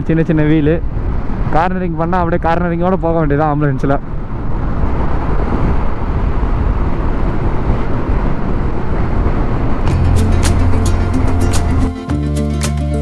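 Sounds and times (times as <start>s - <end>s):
wind and road noise: 0.0s - 11.9s
background music with beats: 9.8s - 13.0s.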